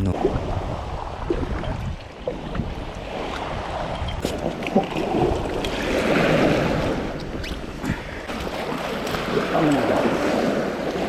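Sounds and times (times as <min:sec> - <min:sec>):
wind on microphone: 0:00.0 - 0:11.0
water splashing against raft: 0:01.2 - 0:11.0.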